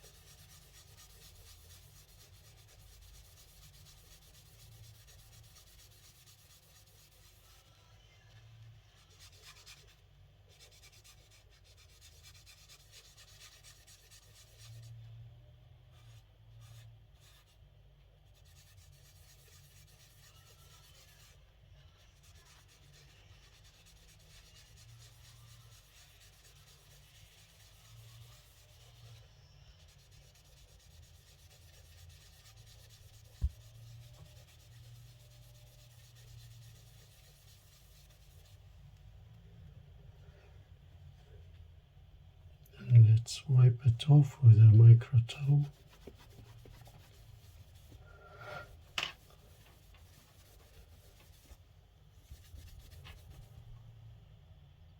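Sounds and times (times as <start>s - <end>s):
tissue rubbing painted metal: 0.0s - 15.1s, 18.3s - 38.8s, 45.1s - 54.0s
low steady hum: 38.7s - 51.6s.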